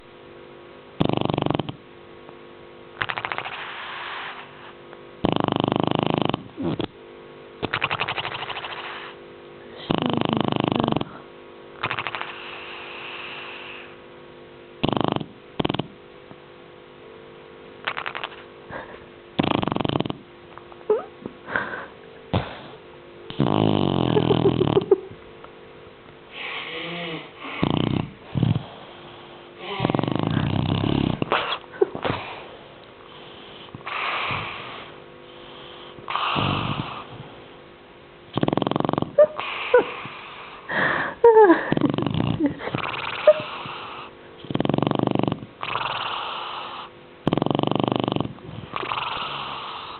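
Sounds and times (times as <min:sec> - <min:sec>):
rattling snore: 0:01.0 - 0:01.8, 0:03.0 - 0:04.6, 0:05.2 - 0:06.9, 0:07.6 - 0:09.2, 0:09.8 - 0:11.2, 0:11.8 - 0:12.9, 0:14.8 - 0:16.0, 0:17.8 - 0:18.5, 0:19.4 - 0:20.2, 0:23.3 - 0:25.0, 0:26.4 - 0:28.9, 0:29.6 - 0:31.6, 0:35.6 - 0:37.3, 0:38.3 - 0:40.5, 0:41.7 - 0:49.9.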